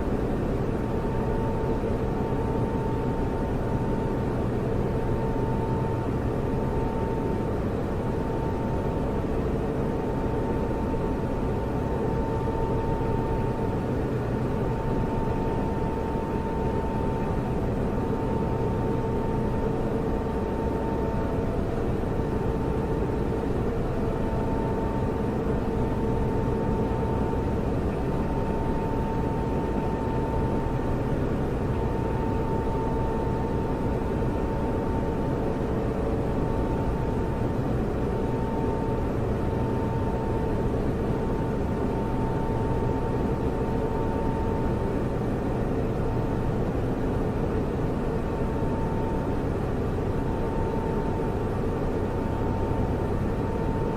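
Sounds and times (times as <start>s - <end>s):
server cooling fans whirring: 0.0s - 53.9s.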